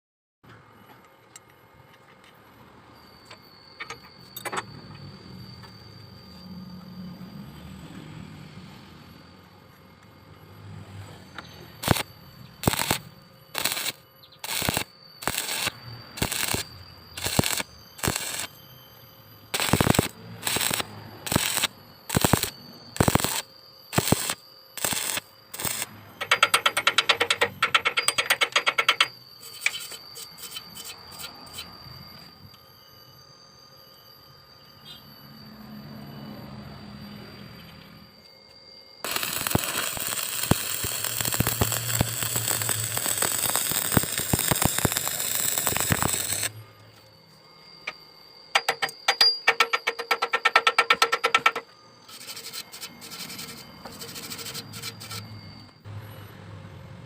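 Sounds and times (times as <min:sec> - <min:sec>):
faint high whine: 0:00.5 - 0:57.0
welding arc crackling: 0:11.8 - 0:18.6, 0:19.5 - 0:29.9, 0:39.0 - 0:46.6.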